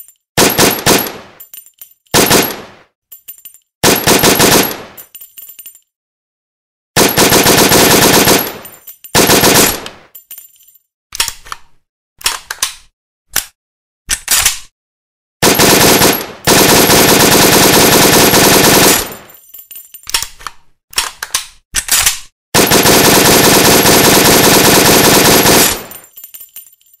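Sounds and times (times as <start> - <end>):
automatic rifle gunfire: 0.4 - 1.3, 2.2 - 2.8, 3.8 - 5.0, 7.0 - 8.6, 9.2 - 10.0, 15.4 - 19.3, 22.6 - 25.9.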